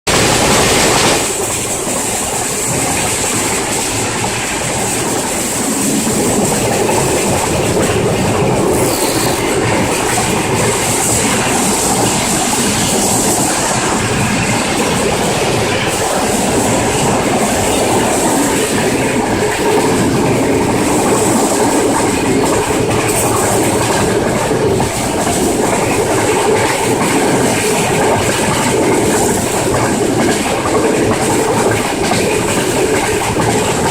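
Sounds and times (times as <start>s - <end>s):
diesel locomotive running: 0.1s - 33.9s
high-pitched squeal: 8.5s - 9.7s.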